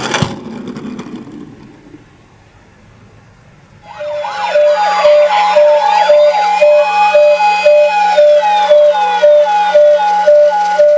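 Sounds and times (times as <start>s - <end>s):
sweeping tones: 3.8s - 10.9s
toy electronic siren: 3.8s - 10.9s.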